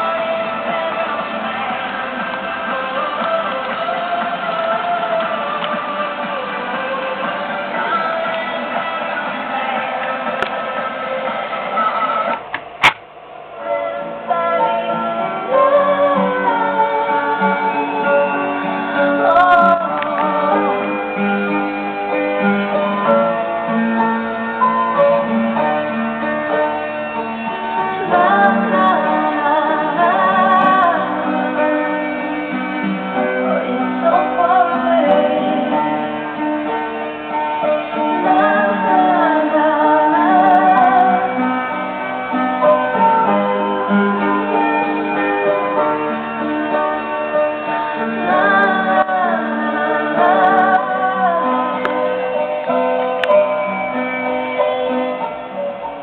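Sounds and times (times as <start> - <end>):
muffled pop song from car radio: 0.0 - 13.0, 13.8 - 21.2.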